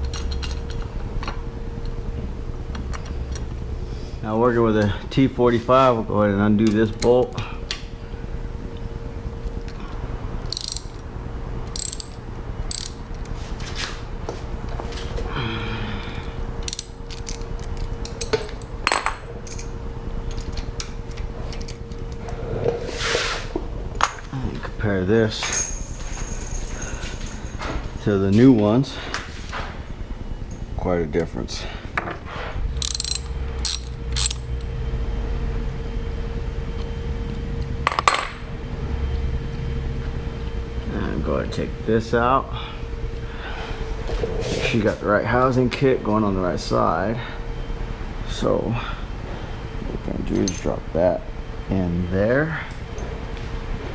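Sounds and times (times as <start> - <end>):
metal parts clinking: 0.0 - 1.4, 10.5 - 11.0, 11.7 - 13.0, 16.6 - 21.8, 25.4 - 27.7, 32.8 - 34.5, 50.3 - 50.7
low hum with faint whine: 0.0 - 53.9
ratchet wrench clicking: 10.5 - 11.0, 11.7 - 13.0, 16.6 - 17.4, 32.8 - 34.5
metal parts clattering: 11.7 - 13.0, 32.8 - 34.5.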